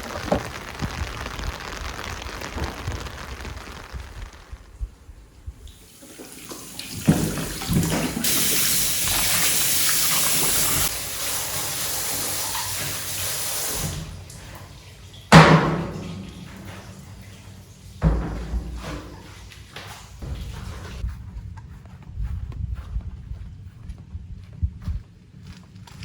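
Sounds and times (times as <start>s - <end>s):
water running from a tap: 5.6s - 21.0s
loud knock: 15.3s - 16.2s.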